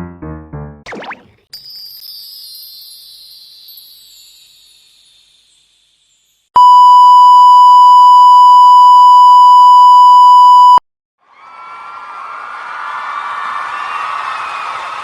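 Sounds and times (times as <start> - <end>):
long electronic censor beep: 6.6 - 10.8.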